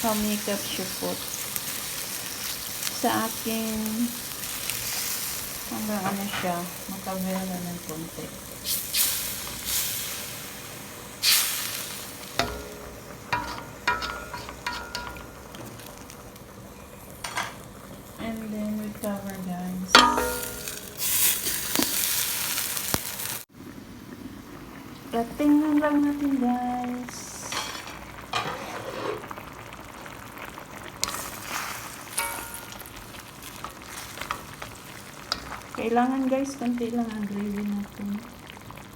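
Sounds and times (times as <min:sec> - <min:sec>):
water hissing in hot pan: 0:00.0 - 0:38.9
sauce bubbling in a pot: 0:06.8 - 0:18.6, 0:19.9 - 0:28.3, 0:29.2 - 0:38.9
metal utensil clinking on pan: 0:12.4 - 0:15.4, 0:19.9 - 0:21.6, 0:32.2 - 0:33.0.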